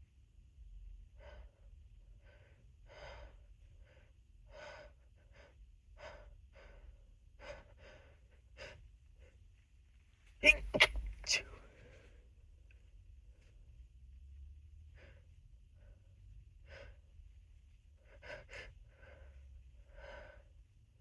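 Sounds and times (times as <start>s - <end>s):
person's short catching breaths: 10.4s - 11.6s.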